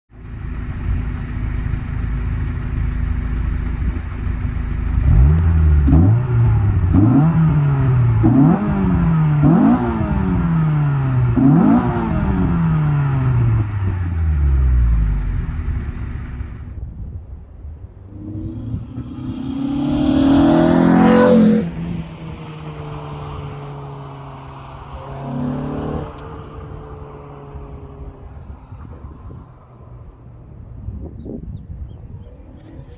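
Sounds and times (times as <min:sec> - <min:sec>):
car engine revving: 0:04.9 - 0:16.4, 0:18.1 - 0:28.1
car accelerating past: 0:18.1 - 0:29.4.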